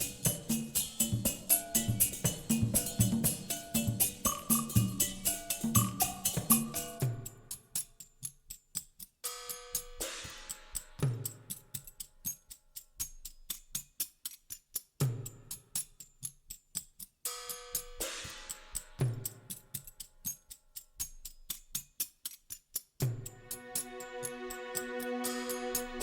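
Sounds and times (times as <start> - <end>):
ticking hi-hat: 0.0 - 26.0
held chords: 23.3 - 26.0.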